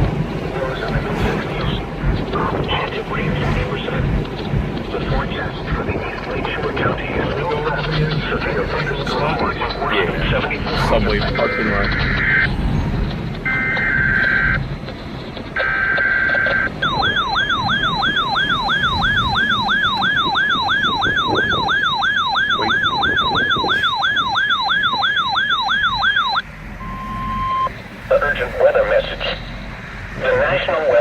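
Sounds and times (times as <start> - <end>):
steady tone: 0.0 - 31.0
digital data bursts: 5.1 - 12.6, 13.4 - 30.9
electronic alarm yelping: 13.5 - 14.6, 15.6 - 29.6.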